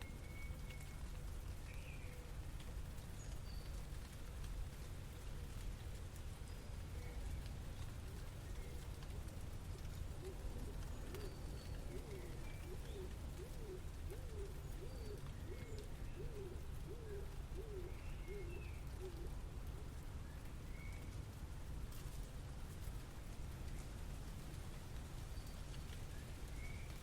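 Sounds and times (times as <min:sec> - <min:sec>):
low city rumble: 0:00.0 - 0:27.0
bird calling: 0:10.2 - 0:19.3.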